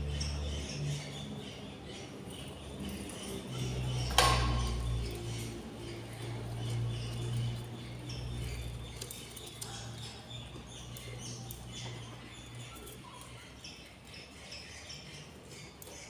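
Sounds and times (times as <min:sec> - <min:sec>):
bird chicks squeaky chirps: 0:00.0 - 0:16.0.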